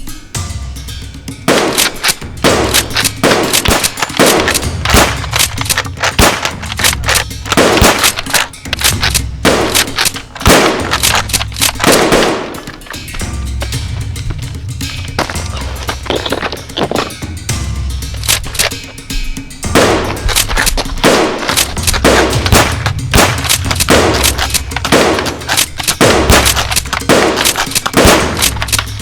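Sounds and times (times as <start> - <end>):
steady low rumble: 0.7 - 29.0
machine-gun fire: 1.5 - 17.2, 19.6 - 29.0.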